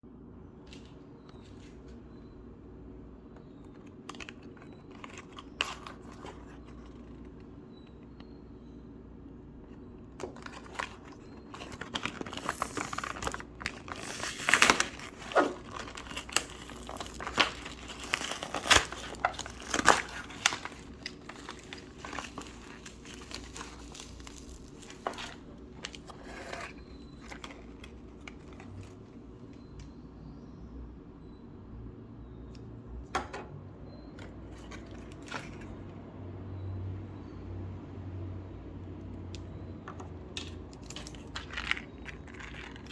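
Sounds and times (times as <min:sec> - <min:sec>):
slime crinkling and crackling: 0:10.2 - 0:29.7, 0:40.4 - 0:42.9.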